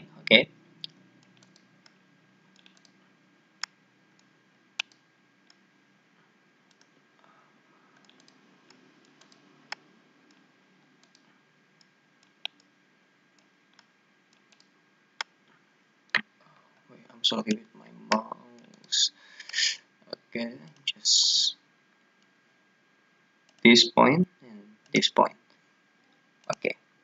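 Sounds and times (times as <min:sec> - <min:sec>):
faint room hiss: 0:00.0 - 0:27.0
computer mouse clicking: 0:00.8 - 0:03.0, 0:03.6 - 0:05.6, 0:06.7 - 0:07.0, 0:08.0 - 0:12.7, 0:13.4 - 0:15.3.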